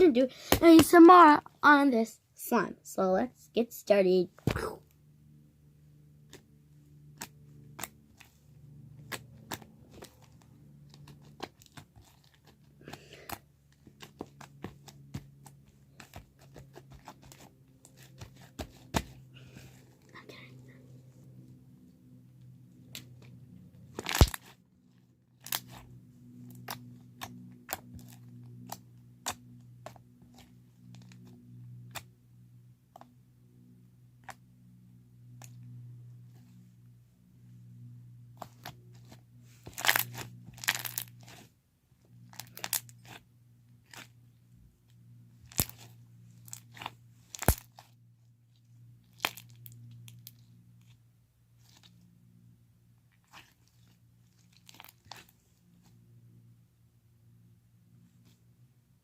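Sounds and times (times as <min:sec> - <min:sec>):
faint low hum: 0:00.0 - 0:59.0
slime squished by hand: 0:24.0 - 0:24.5, 0:39.7 - 0:41.4, 0:45.5 - 0:45.9, 0:46.5 - 0:47.9.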